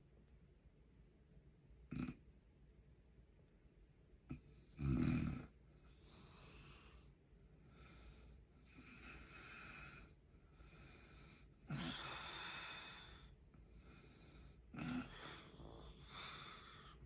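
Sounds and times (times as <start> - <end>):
man snoring: 4.3 - 5.5, 8.6 - 10.1, 11.6 - 13.3, 14.7 - 17.0
quiet breathing: 5.5 - 17.0.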